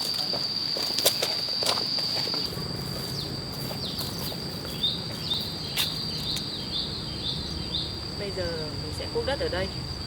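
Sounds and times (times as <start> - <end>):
high insect drone: 0.0 - 10.0
bird chirping: 3.0 - 8.0.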